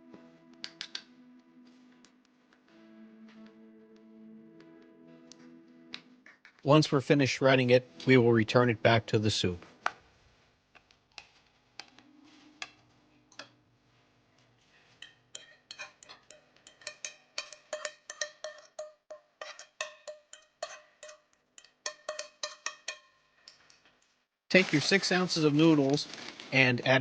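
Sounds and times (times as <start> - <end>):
forks scraping against dishes: 14.8 - 23.1.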